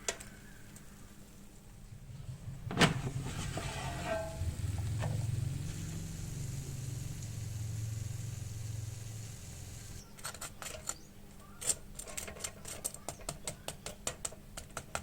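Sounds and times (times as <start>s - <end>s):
low mechanical hum: 0.0s - 15.0s
sharp clicks and crackles: 9.9s - 15.0s.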